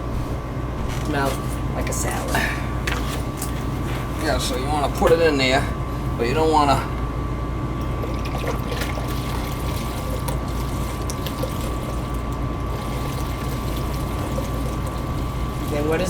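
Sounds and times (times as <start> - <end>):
gas furnace humming: 0.0 - 16.0
liquid pouring through a funnel: 7.7 - 16.0.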